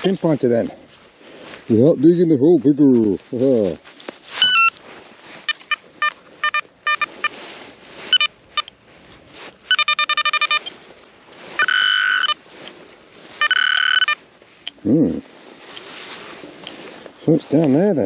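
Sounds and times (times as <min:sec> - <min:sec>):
metal detector beeping: 0:04.3 - 0:04.8, 0:05.4 - 0:07.4, 0:08.0 - 0:08.8, 0:09.6 - 0:10.8, 0:11.5 - 0:12.4, 0:13.3 - 0:14.8.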